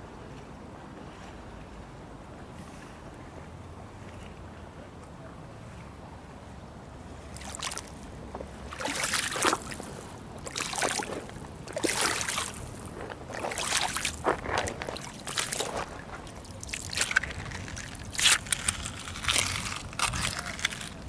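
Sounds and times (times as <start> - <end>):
water splashing and sloshing: 6.9 - 21.0.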